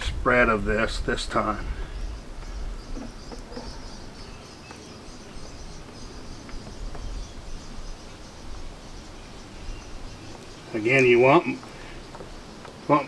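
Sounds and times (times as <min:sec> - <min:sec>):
wind rumble on microphone: 0:00.0 - 0:04.4, 0:05.2 - 0:10.4
insects chirping: 0:00.0 - 0:13.0.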